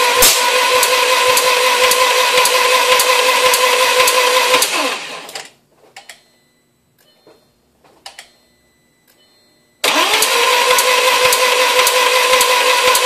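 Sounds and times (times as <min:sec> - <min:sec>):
starter motor cranking engine: 0:00.0 - 0:05.5, 0:09.8 - 0:13.0.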